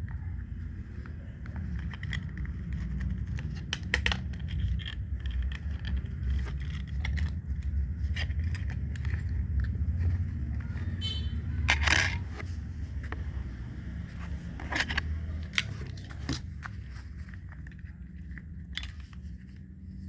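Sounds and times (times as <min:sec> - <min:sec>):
packaging and tools handled: 0:00.0 - 0:20.0
clatter: 0:00.1 - 0:11.0, 0:11.6 - 0:13.2.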